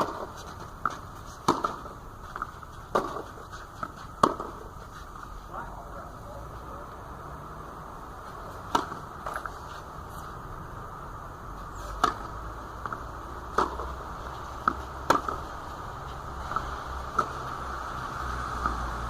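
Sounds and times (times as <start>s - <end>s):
tennis ball pops: 0.0s - 3.2s, 4.2s - 4.6s, 8.6s - 9.5s, 12.0s - 14.0s, 14.6s - 15.4s, 16.5s - 17.4s.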